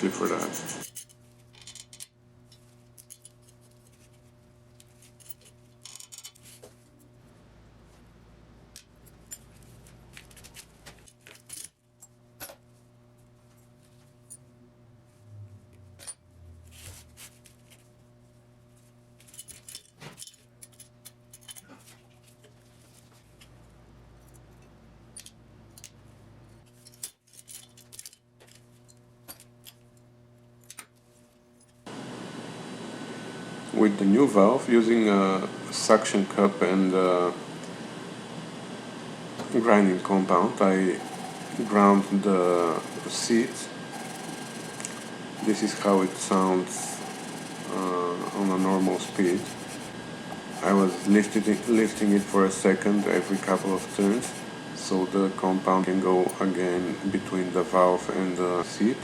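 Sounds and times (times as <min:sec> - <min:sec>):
steady low hum: 0:00.0 - 0:59.0
metallic clicks of engine parts: 0:24.2 - 0:26.0.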